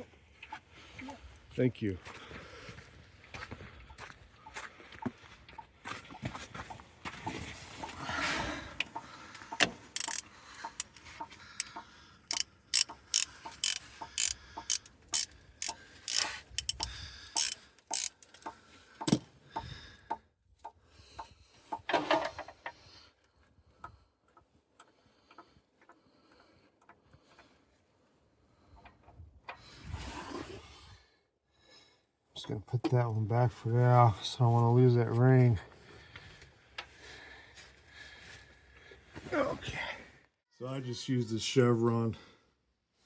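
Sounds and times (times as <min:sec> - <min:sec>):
ratchet wrench clicking: 0:09.6 - 0:19.2.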